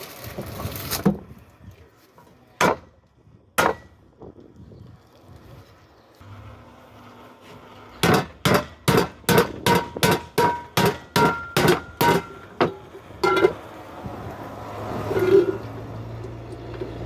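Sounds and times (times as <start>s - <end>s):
hammer striking metal: 8.0s - 13.6s.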